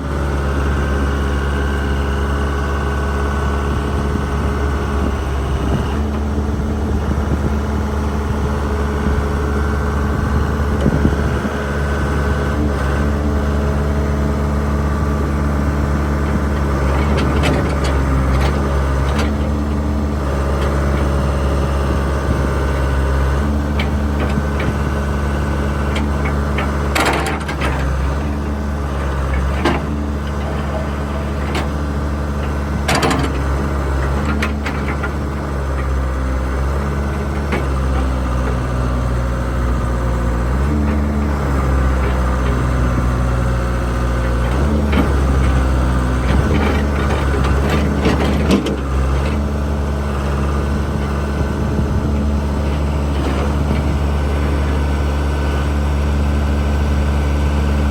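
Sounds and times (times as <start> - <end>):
diesel engine running: 0.0 - 57.9.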